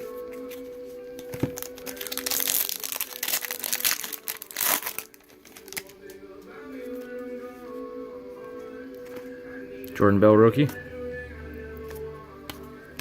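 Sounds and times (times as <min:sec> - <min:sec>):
foil wrapper crinkling: 0:01.3 - 0:06.0.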